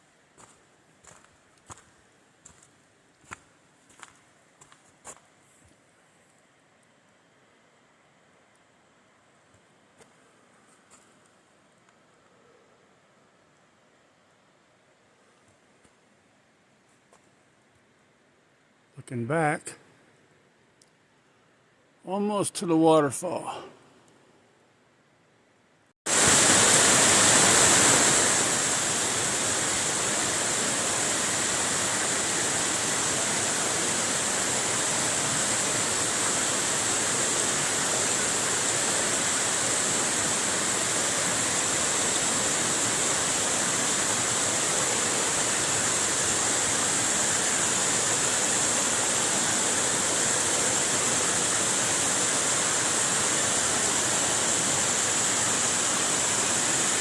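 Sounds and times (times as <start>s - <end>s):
waterfall rushing: 26.1s - 57.0s.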